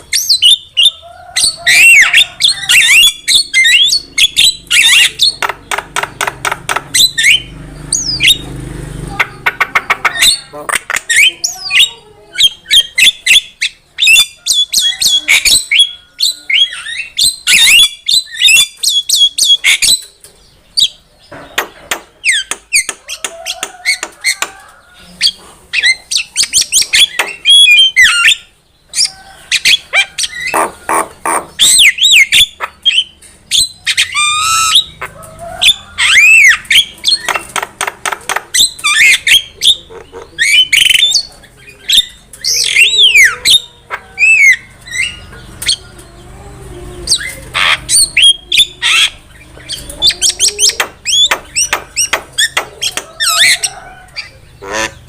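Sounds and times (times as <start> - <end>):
myna squawks whistles and chatter: 0.0 - 5.5, 9.2 - 20.1, 22.2 - 46.2, 47.0 - 55.0.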